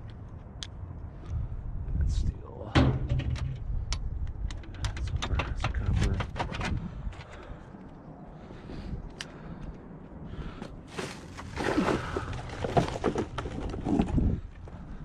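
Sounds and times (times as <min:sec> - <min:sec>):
scrap metal clanking and rattling: 0:02.8 - 0:03.6.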